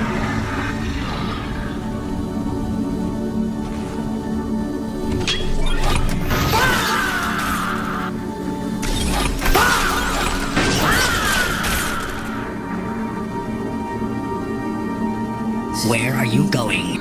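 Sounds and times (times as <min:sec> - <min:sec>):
falling whines: 0:00.0 - 0:12.7
dark tense background music: 0:00.0 - 0:17.0.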